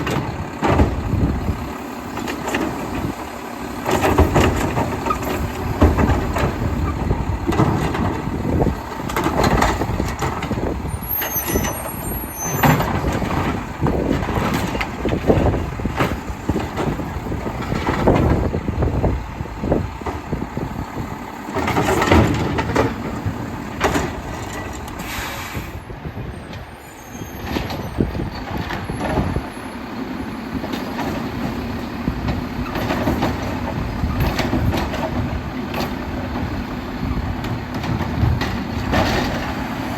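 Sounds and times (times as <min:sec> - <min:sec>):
diesel engine running: 0:00.0 - 0:39.9
sharp clanks and knocks: 0:21.5 - 0:25.1, 0:37.4 - 0:39.7.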